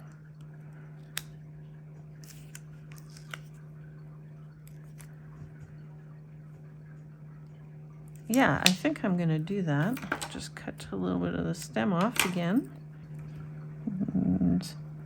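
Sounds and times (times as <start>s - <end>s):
steady low hum: 0.0s - 15.0s
paper and sticker handling: 2.2s - 3.6s.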